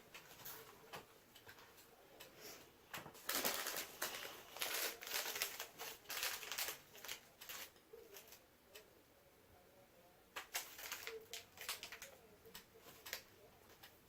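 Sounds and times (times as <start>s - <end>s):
paper packaging crinkling: 3.1s - 8.4s, 10.4s - 14.0s.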